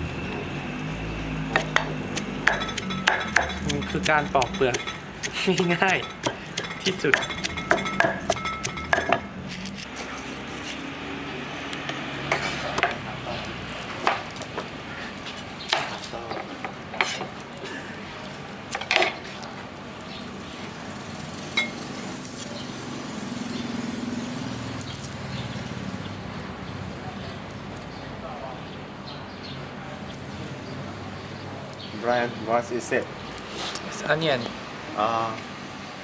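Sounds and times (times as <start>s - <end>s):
utensils and dishes clinking: 0.3s - 9.9s, 21.5s - 22.5s.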